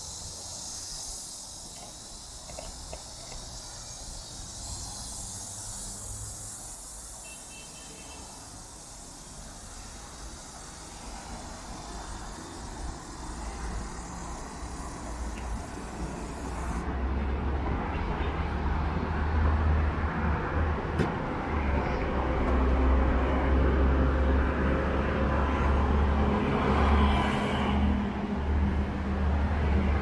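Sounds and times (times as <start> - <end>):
road traffic rumble: 0.0 - 30.0
vehicle engine humming: 8.3 - 30.0.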